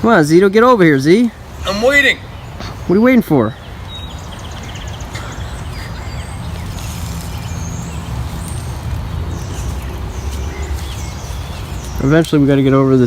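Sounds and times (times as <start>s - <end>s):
wind buffeting microphone: 3.6s - 13.0s.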